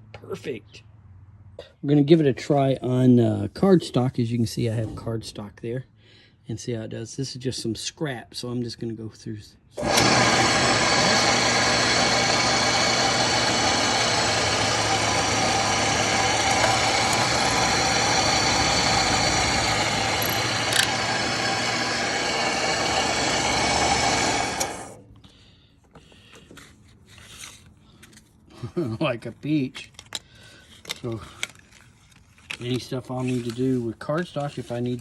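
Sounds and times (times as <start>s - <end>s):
drill press whining: 9.8s - 25.0s.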